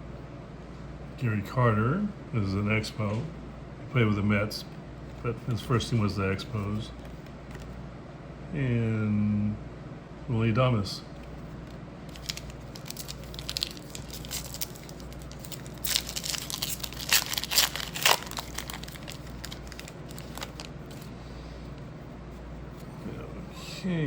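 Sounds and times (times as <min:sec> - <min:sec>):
cards rustling: 0:05.1 - 0:07.8, 0:11.2 - 0:22.0
wrapper crinkling and tearing: 0:12.1 - 0:21.1.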